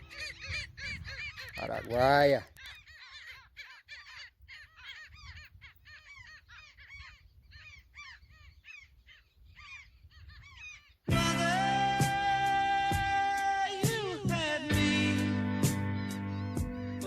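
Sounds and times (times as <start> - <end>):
flock of birds chattering: 0.0 - 11.4.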